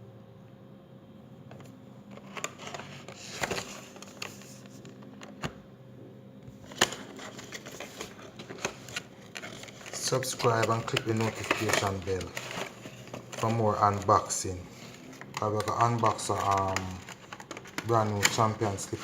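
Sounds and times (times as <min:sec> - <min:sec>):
packaging clicks and knocks: 0:06.7 - 0:14.0, 0:15.2 - 0:18.8.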